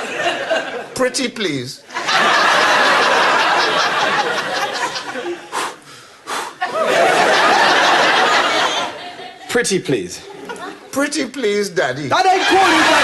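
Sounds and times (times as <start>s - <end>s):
studio audience laughing: 0.0s - 1.0s, 1.9s - 5.6s, 6.6s - 11.1s, 12.2s - 13.0s.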